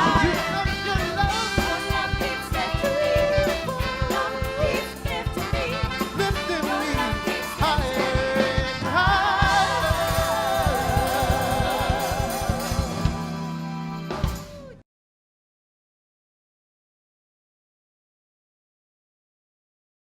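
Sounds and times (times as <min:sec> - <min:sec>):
person singing with vibrato: 0:00.0 - 0:13.2
funk band music: 0:00.0 - 0:14.8.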